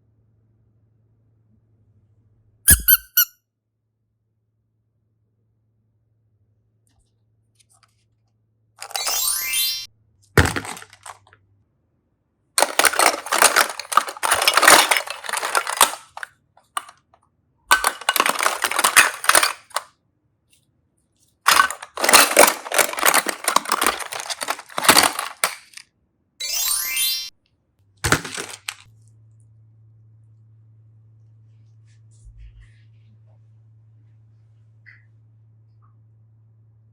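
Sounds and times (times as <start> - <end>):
foil and plastic wrapping crinkling: 10.4 - 11.2, 12.6 - 16.9, 17.7 - 19.8, 21.5 - 25.8, 28.1 - 28.9.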